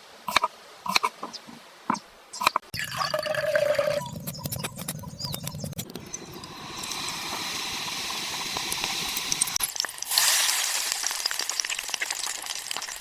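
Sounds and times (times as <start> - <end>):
hot oil sizzling: 6.1 - 13.0.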